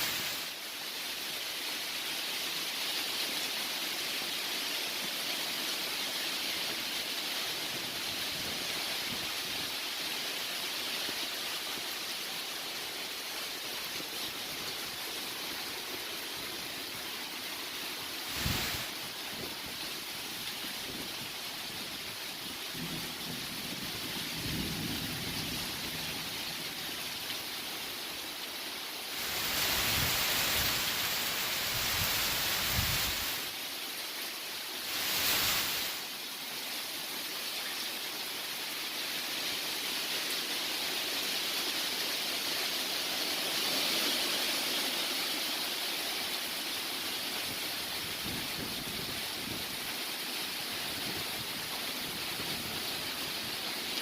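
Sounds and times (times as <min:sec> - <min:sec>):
steady rain: 0:00.0 - 0:54.0.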